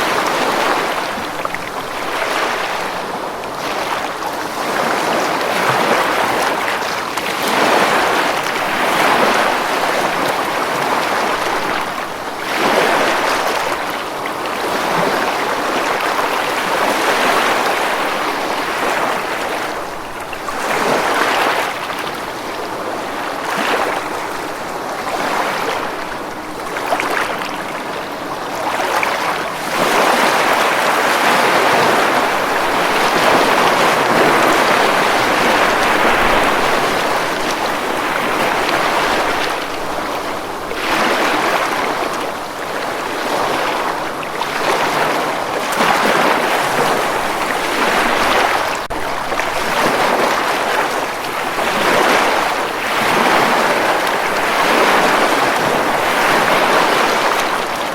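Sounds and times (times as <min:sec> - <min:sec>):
ocean waves breaking: 0:00.0 - 0:57.9.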